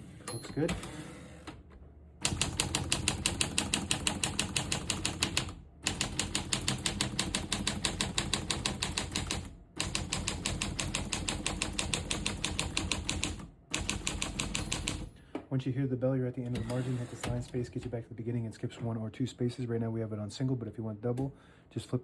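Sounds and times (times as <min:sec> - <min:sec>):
manual typewriter typing: 0:02.2 - 0:15.1.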